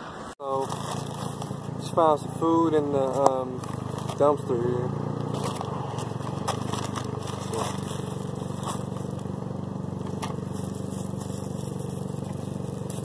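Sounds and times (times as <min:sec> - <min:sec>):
motor humming: 0:04.9 - 0:13.0.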